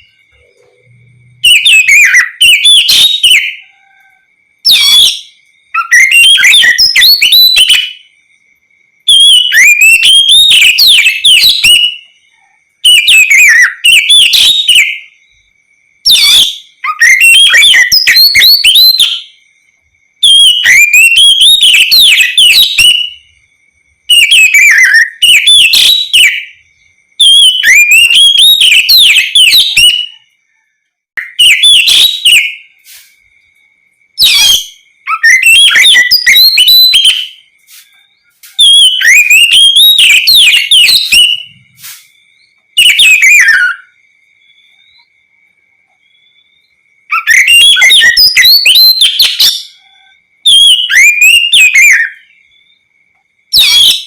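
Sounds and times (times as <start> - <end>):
bird warbling song: 31.2 - 33.2, 34.2 - 43.9.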